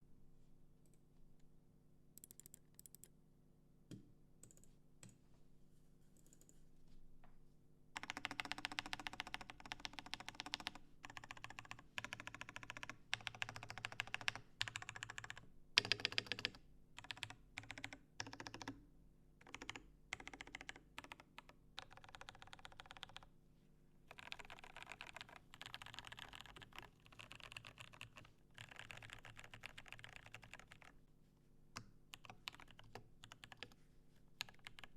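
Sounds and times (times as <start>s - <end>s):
mechanical keyboard typing: 2.2s - 3.1s, 8.0s - 18.8s, 19.4s - 23.3s, 24.1s - 31.0s, 32.1s - 33.8s, 34.4s - 34.9s.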